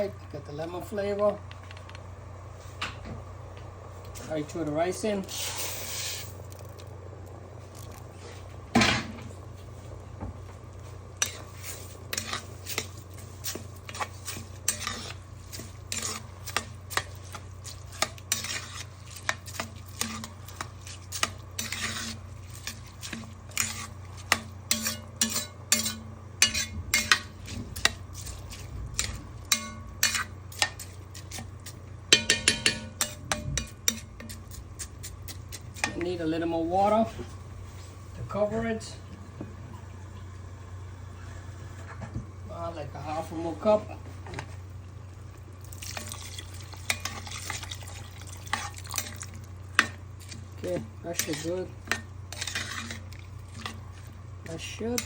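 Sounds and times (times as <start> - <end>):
spoon clinking in cooking pot: 32.1 - 34.0.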